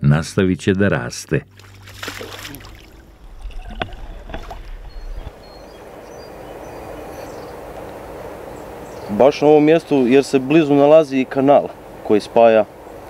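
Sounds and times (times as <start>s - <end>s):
steady outdoor hiss: 0.4s - 13.0s
water sloshing and splashing: 1.5s - 5.6s.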